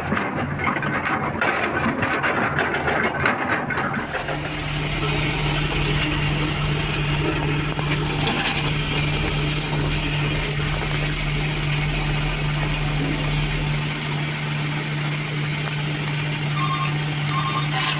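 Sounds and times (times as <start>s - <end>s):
heavy diesel engine droning: 3.7s - 17.9s.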